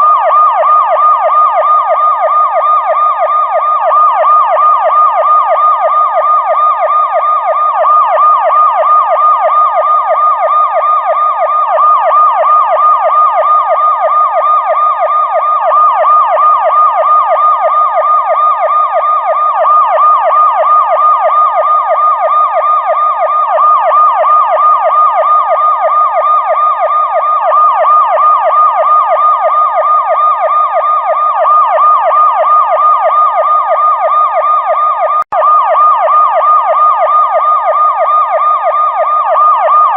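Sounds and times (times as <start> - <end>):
police siren yelping: 0.0 - 39.9.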